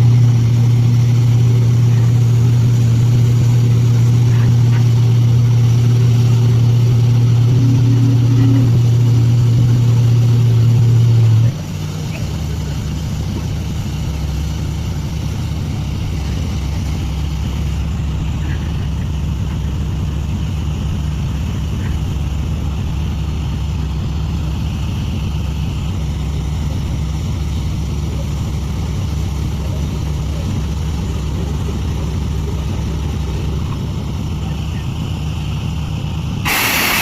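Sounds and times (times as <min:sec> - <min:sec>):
drilling rig engine droning: 0:00.0 - 0:37.0.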